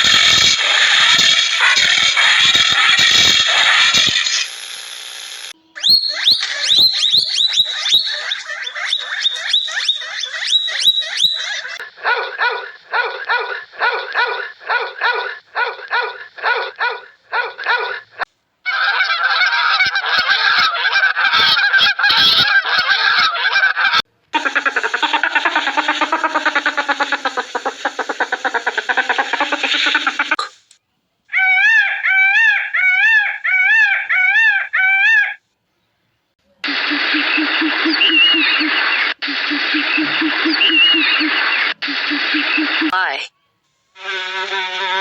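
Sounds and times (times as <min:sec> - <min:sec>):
animal calls: 0:00.0 - 0:04.5, 0:05.8 - 0:30.6, 0:31.3 - 0:35.4, 0:36.6 - 0:43.0.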